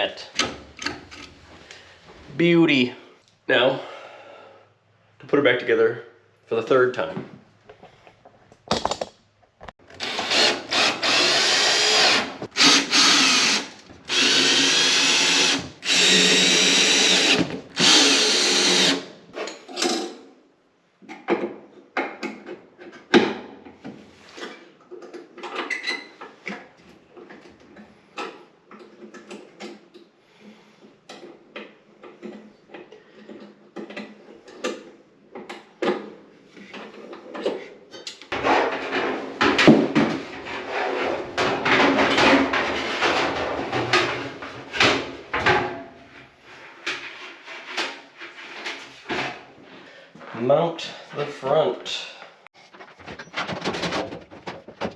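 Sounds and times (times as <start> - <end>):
clicks and knocks of parts handled: 7.7 - 10.0
power drill driving screws: 9.9 - 19.1.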